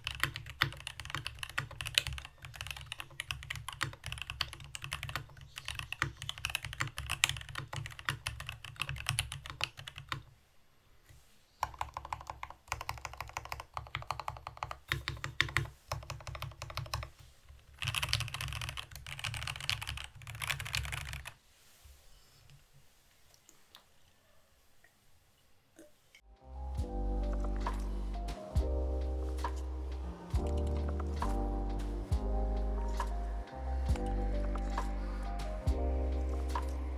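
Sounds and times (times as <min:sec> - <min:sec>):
fast typing on mechanical keyboard: 0:00.0 - 0:10.3, 0:11.6 - 0:21.4.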